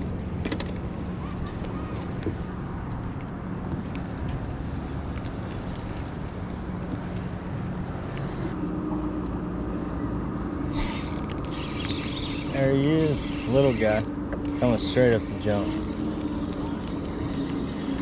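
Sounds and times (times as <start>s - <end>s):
boat motor humming: 0.0s - 3.2s, 10.6s - 18.0s.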